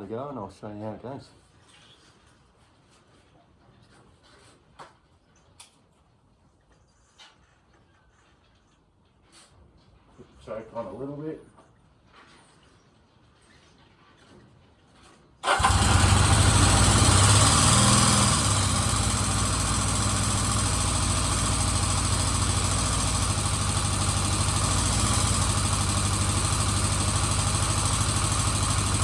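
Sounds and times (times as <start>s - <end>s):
motorcycle engine starting and idling: 15.4s - 29.0s.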